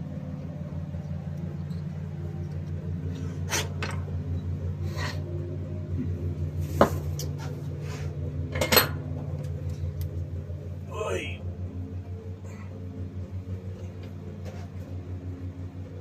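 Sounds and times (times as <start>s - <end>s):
steady low hum: 0.0s - 16.0s
metal tools clinking and scraping: 8.5s - 9.0s.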